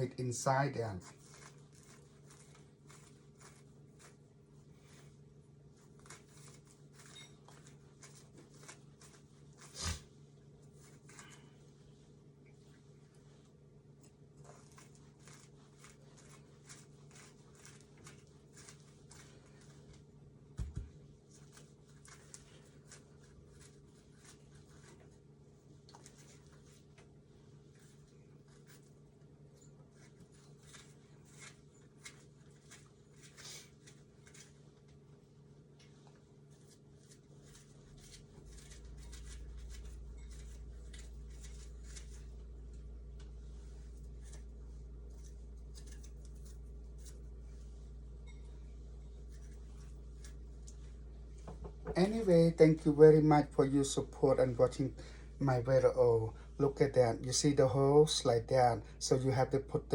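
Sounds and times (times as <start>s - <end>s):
low steady hum: 0.0s - 59.9s
knife scraping cucumber seeds: 1.0s - 11.6s, 14.0s - 19.9s, 21.3s - 25.1s, 29.6s - 35.0s, 36.4s - 42.5s, 43.8s - 47.4s, 49.2s - 50.9s.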